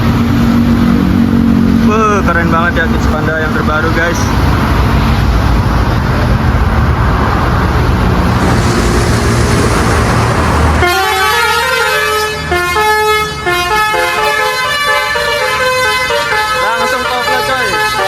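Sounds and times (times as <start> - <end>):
bus engine rumbling: 0.0 - 18.0
musical horn melody: 8.4 - 18.0.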